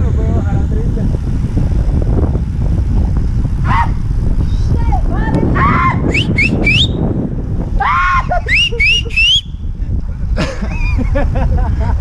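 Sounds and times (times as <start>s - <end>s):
steady low rumble: 0.0s - 12.0s
high rising whistle-like calls: 5.9s - 7.1s, 8.2s - 9.6s.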